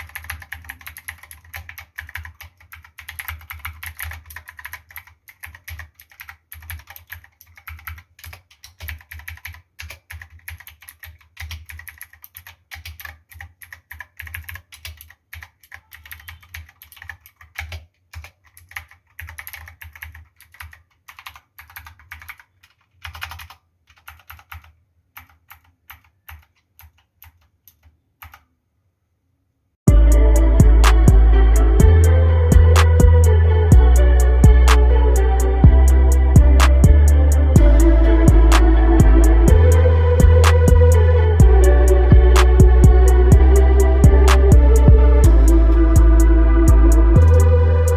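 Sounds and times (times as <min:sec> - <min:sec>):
typing on mechanical keyboard: 0:00.0 - 0:28.5.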